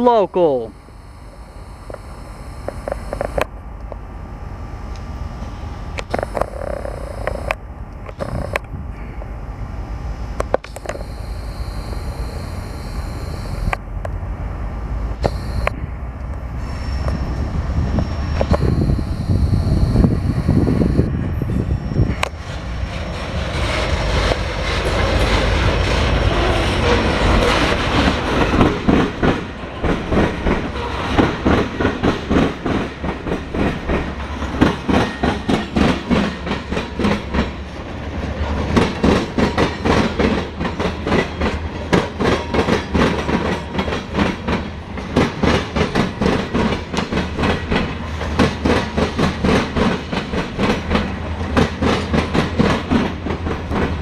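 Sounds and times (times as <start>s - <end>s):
train wheels clickety-clack: 22.1s - 54.0s.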